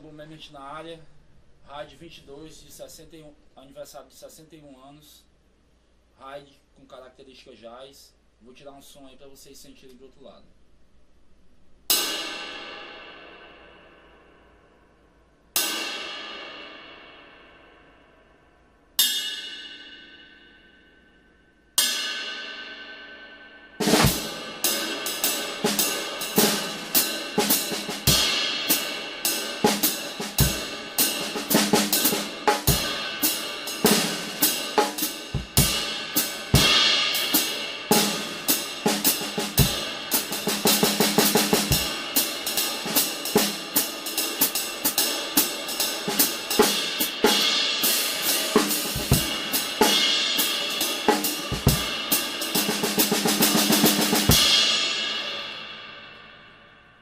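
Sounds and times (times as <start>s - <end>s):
drum kit groove: 23.8s - 55.6s.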